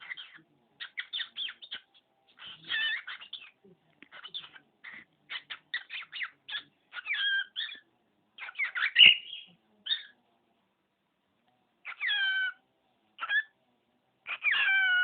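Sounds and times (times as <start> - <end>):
cockatiel chattering and chirping: 0.0 - 7.8, 8.4 - 10.1, 11.8 - 12.6, 13.2 - 13.5, 14.2 - 15.0.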